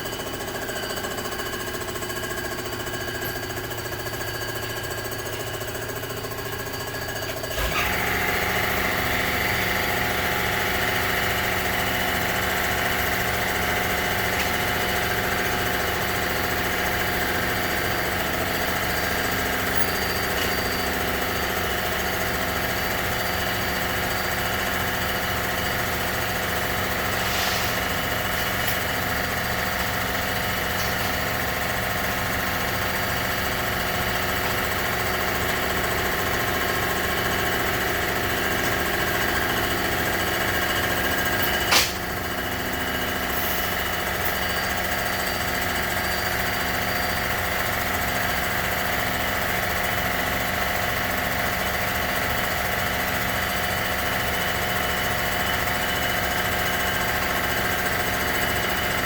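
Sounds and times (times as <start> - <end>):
machine tool humming: 7.4 - 32.7.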